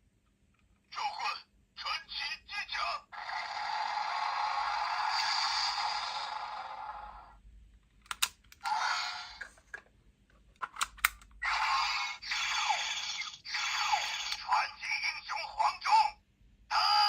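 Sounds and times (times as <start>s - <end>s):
toy speaker crackling hiss: 3.8s - 7.3s, 11.5s - 14.6s
sharp clicks: 8.0s - 8.7s.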